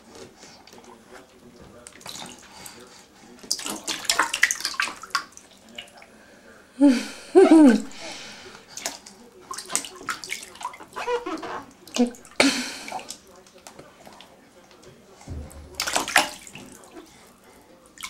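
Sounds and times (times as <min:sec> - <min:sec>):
water splashing in bathtub: 0:00.0 - 0:06.2, 0:07.1 - 0:18.0.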